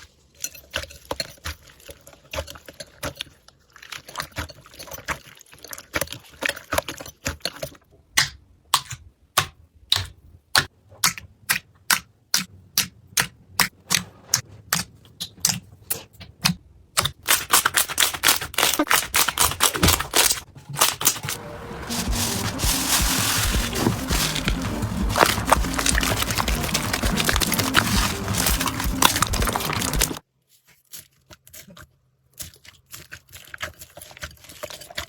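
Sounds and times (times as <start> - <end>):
slime clicking and crackling: 22.1 - 30.2.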